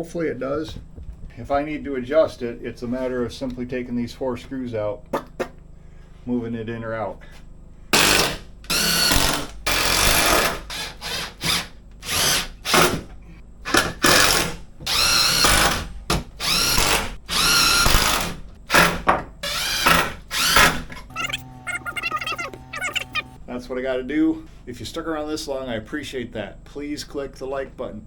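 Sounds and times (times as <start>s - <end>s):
power drill whining in bursts: 8.0s - 12.9s, 14.1s - 23.4s.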